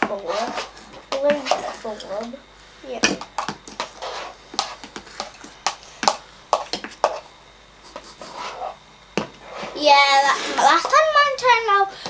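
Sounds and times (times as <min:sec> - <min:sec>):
slime being stirred: 0:00.0 - 0:02.0, 0:03.2 - 0:07.2.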